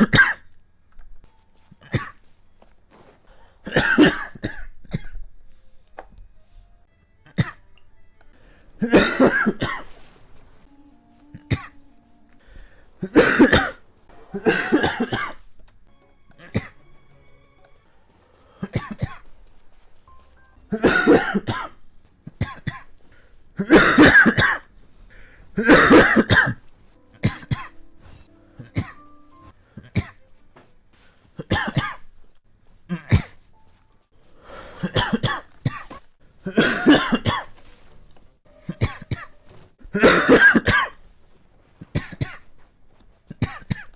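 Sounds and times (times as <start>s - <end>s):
person coughing: 0.0s - 0.5s, 1.7s - 2.2s, 3.6s - 5.2s, 7.2s - 7.7s, 8.8s - 9.9s, 11.3s - 11.8s, 13.0s - 15.5s, 16.4s - 16.8s, 18.6s - 19.3s, 20.7s - 22.9s, 23.6s - 24.7s, 25.6s - 26.6s, 27.2s - 29.0s, 29.8s - 30.2s, 31.4s - 32.0s, 32.9s - 33.4s, 34.7s - 37.6s, 38.6s - 41.0s, 41.9s - 42.5s, 43.3s - 43.9s.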